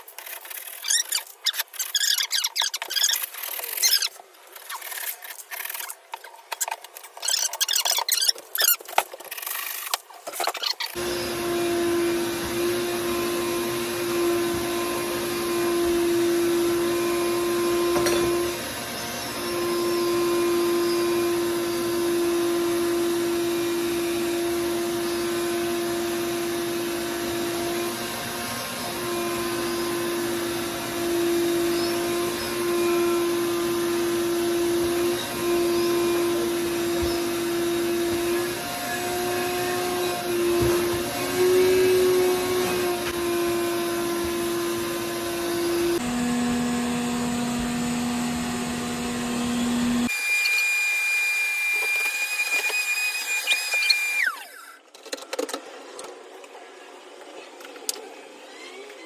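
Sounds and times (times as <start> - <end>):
small electric motor humming: 10.9 - 54.8.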